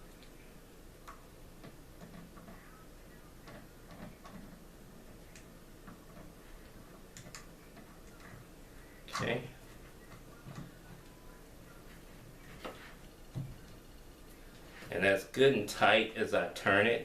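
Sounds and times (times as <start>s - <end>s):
small clicks and taps: 1.0s - 2.6s, 3.4s - 8.4s.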